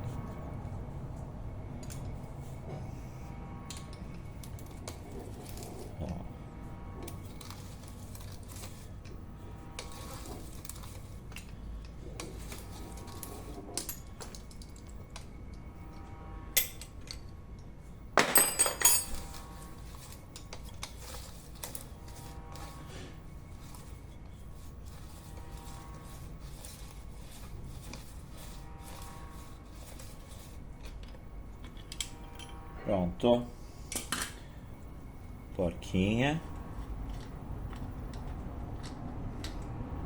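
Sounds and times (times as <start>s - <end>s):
metal hand tools clinking: 16.6s - 17.3s, 18.2s - 19.5s.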